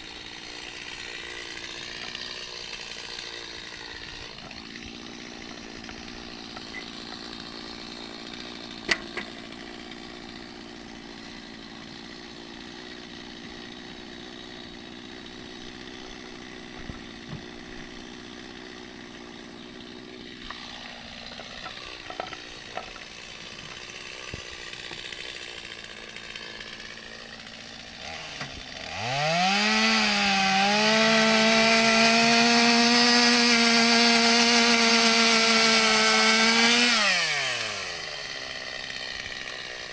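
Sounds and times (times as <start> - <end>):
chainsaw idling: 0.0 - 39.9
chainsaw revving at full throttle: 0.0 - 39.9.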